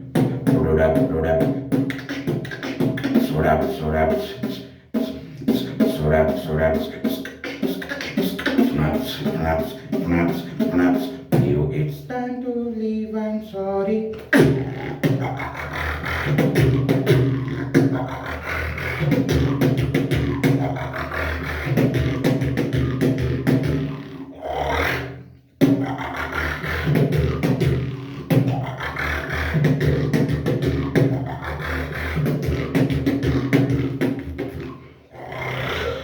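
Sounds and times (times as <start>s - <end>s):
person beatboxing: 0.0s - 36.0s
hummed bass line: 14.4s - 24.2s.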